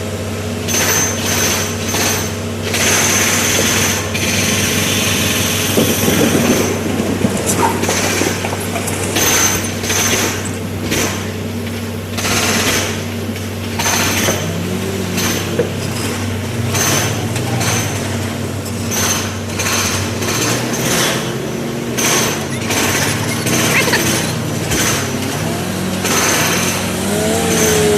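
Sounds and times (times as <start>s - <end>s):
excavator diesel engine: 0.0s - 27.9s.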